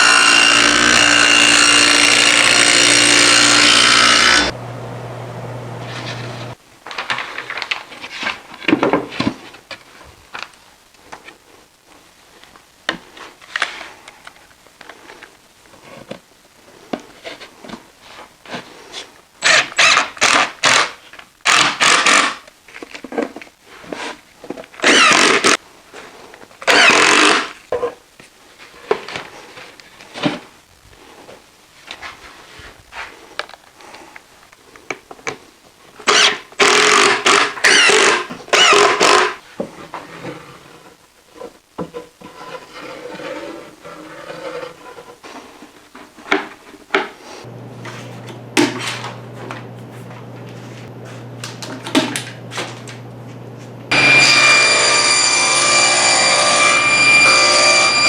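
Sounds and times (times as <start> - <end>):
machine hum: 0.0 - 6.6, 47.5 - 58.0
scraping and rubbing on wood: 39.3 - 47.4.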